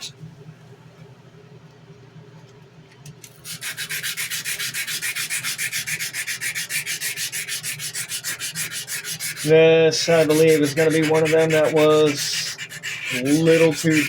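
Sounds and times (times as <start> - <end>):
sandpaper rubbing on steel blade: 3.4 - 14.0.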